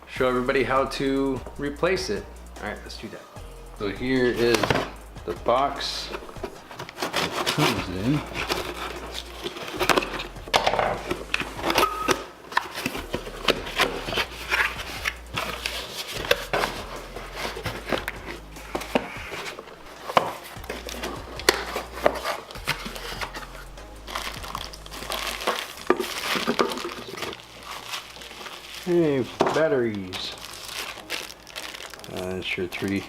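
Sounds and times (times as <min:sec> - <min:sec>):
packaging crinkling and rustling: 0:06.0 - 0:33.0.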